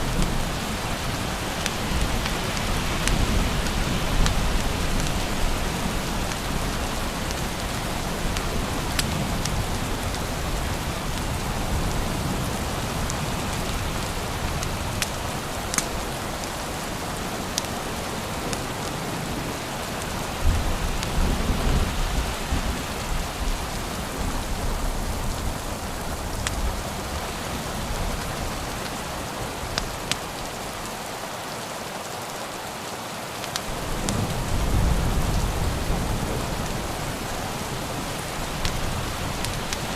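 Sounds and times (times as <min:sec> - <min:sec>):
steady rain falling: 0:00.0 - 0:39.9
log fire popping and crackling: 0:00.1 - 0:19.2, 0:25.3 - 0:30.6, 0:33.4 - 0:39.9.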